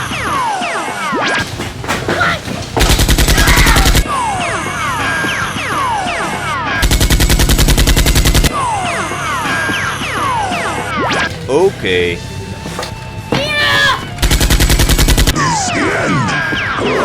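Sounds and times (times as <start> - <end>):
rapid automatic gunfire: 2.8 - 4.0, 6.8 - 8.5, 14.2 - 15.4.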